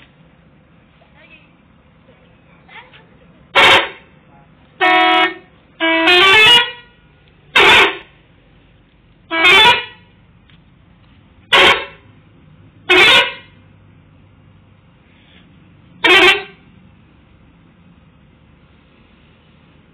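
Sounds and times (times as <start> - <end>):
musical bus horn blasts: 3.5 - 4.1, 4.8 - 8.2, 9.3 - 10.2, 11.4 - 12.1, 12.8 - 13.6, 16.0 - 16.7.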